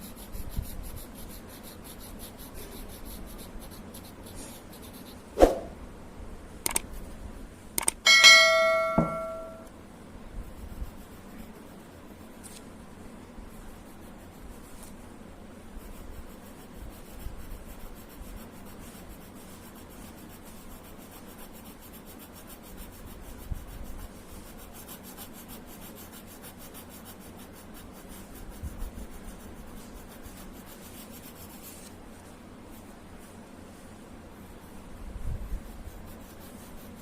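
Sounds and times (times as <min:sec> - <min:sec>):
pencil scratching on paper: 0:00.0 - 0:05.5, 0:10.2 - 0:12.8, 0:13.4 - 0:33.2, 0:35.4 - 0:37.0
soft knocks: 0:08.1 - 0:09.6.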